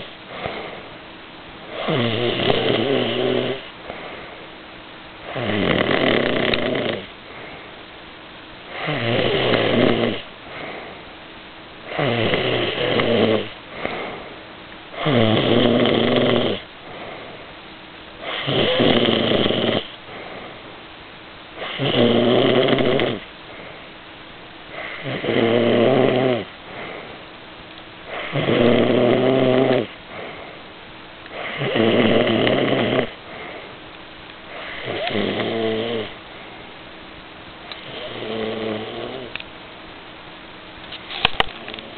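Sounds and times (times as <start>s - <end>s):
person snoring loudly: 1.7s - 3.7s, 5.3s - 7.1s, 8.7s - 10.3s, 11.9s - 14.1s, 15.0s - 16.6s, 18.2s - 20.4s, 21.6s - 23.2s, 24.7s - 26.5s, 28.1s - 30.4s, 31.3s - 33.6s, 34.5s - 36.2s, 37.9s - 39.3s.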